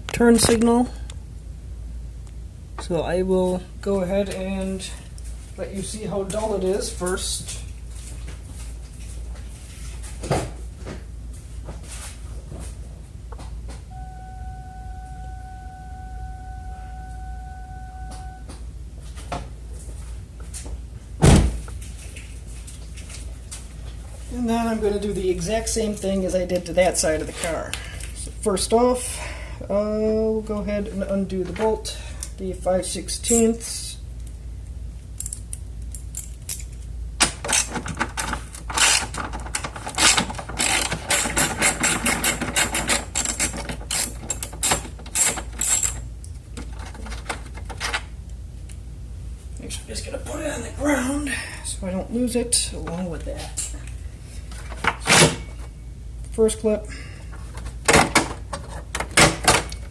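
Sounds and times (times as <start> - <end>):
steady electronic tone: 13.9 - 18.6.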